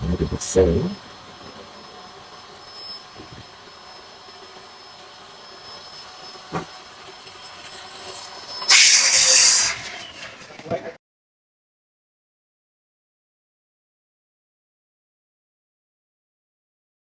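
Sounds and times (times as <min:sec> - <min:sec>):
burst of rushing air hiss: 0:08.7 - 0:10.2.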